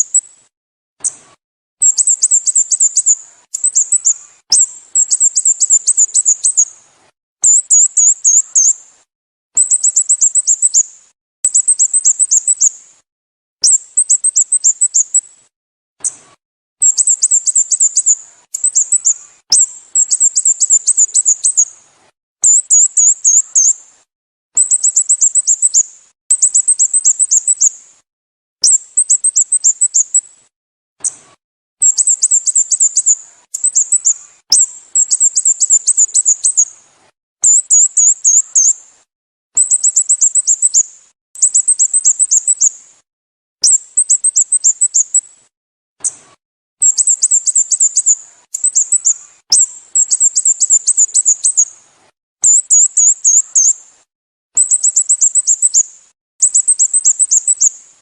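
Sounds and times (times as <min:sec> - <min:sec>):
bulbul chirping: 0:01.8 - 0:06.7, 0:09.6 - 0:10.8, 0:13.6 - 0:15.2, 0:16.8 - 0:21.7, 0:22.4 - 0:23.7, 0:24.6 - 0:27.7, 0:28.6 - 0:30.2, 0:31.8 - 0:36.7, 0:37.4 - 0:38.7, 0:39.6 - 0:40.8, 0:41.4 - 0:42.7, 0:43.6 - 0:45.2, 0:46.8 - 0:51.7, 0:52.4 - 0:53.7, 0:54.6 - 0:55.8, 0:56.4 - 0:57.7.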